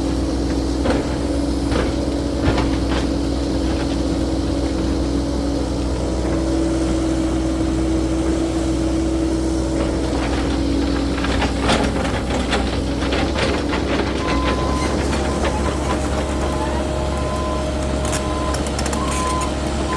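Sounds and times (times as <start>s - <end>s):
diesel engine running: 0.0s - 19.9s.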